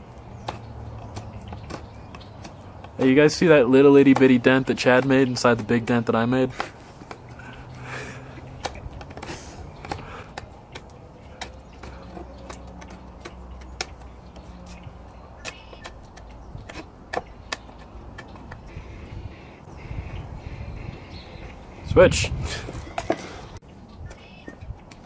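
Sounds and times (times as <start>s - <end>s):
knife cutting into wood: 4.0s - 18.6s.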